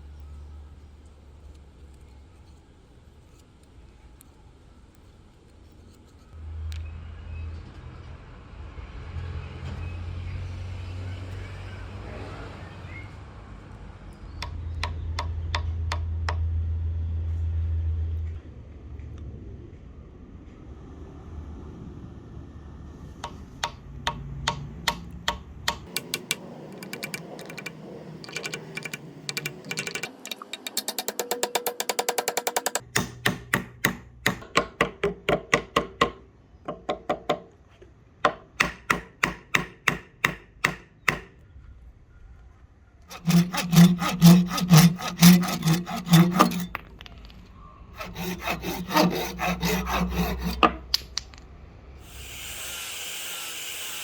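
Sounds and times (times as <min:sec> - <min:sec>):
hand tool scraping hard wood: 0:43.1 - 0:46.8, 0:48.0 - 0:51.0.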